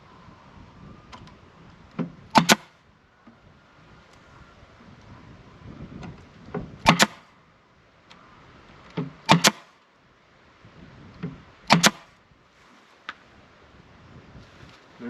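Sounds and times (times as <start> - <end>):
hammer nailing into wooden box: 2.4 - 2.7, 6.9 - 7.2, 9.3 - 9.6, 11.7 - 12.0.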